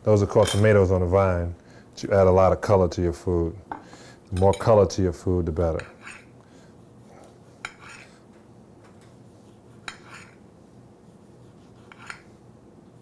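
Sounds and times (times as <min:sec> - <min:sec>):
knife slicing tomato: 0:09.5 - 0:10.4, 0:11.4 - 0:12.4.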